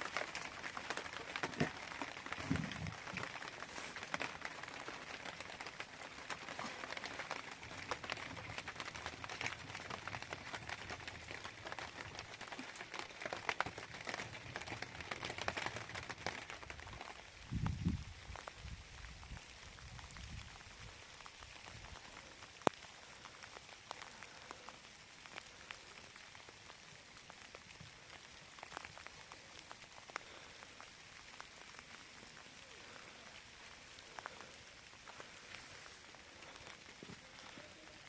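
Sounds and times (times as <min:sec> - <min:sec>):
light rain falling: 0:00.0 - 0:38.0.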